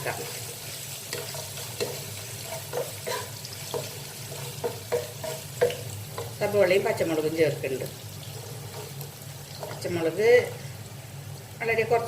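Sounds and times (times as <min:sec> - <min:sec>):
garlic frying in oil: 0:00.0 - 0:12.0
spoon knocking against pan: 0:02.7 - 0:06.4.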